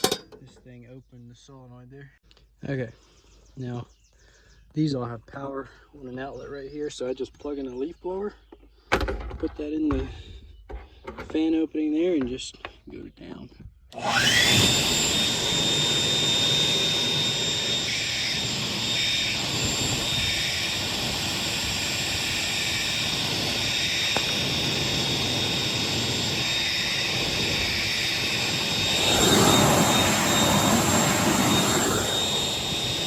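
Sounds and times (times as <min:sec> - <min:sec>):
leaf blower motor whine: 0:13.9 - 0:33.0
rush of air: 0:23.4 - 0:33.0.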